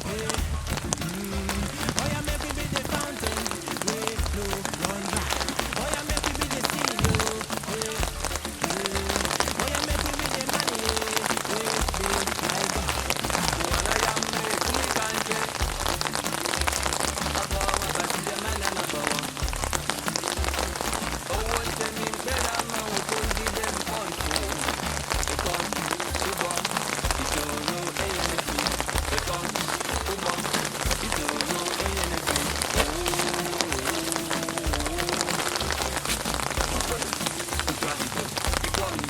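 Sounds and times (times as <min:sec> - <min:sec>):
heavy rain pattering on hard surfaces: 0:00.0 - 0:39.0
song playing: 0:00.0 - 0:39.0.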